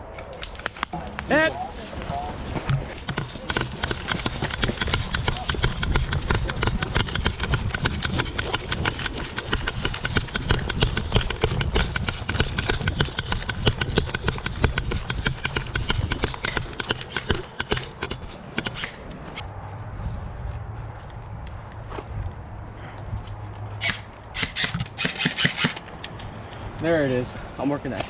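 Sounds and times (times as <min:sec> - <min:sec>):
airsoft gun full-auto rattle: 0:03.0 - 0:19.0, 0:24.4 - 0:26.0.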